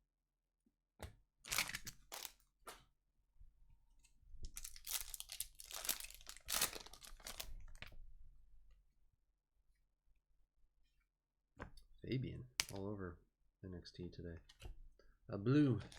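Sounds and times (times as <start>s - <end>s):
foil wrappers tearing and crinkling: 1.5s - 2.4s, 4.5s - 7.9s.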